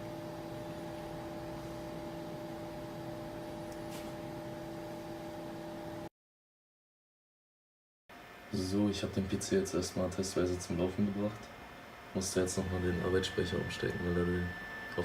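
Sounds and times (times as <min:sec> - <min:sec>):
electrical hum with two tones: 0:00.0 - 0:06.1, 0:10.6 - 0:15.0.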